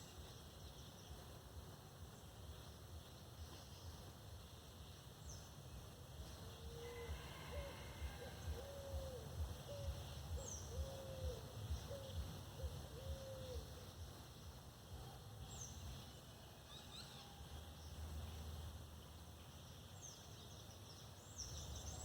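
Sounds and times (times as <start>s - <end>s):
bird hooting: 6.6s - 14.0s.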